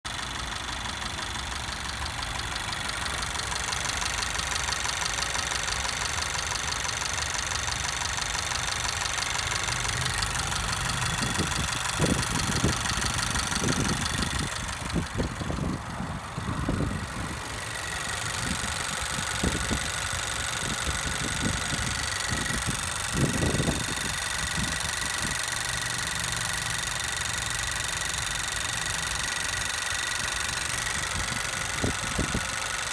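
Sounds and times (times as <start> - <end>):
car engine ticking loudly: 0.0 - 32.9.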